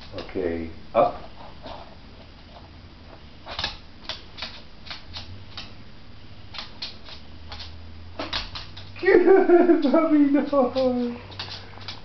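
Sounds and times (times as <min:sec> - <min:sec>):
steady low hum: 0:00.0 - 0:12.0
puppy claws clicking on floor: 0:03.4 - 0:05.8, 0:06.5 - 0:09.0, 0:09.6 - 0:12.0.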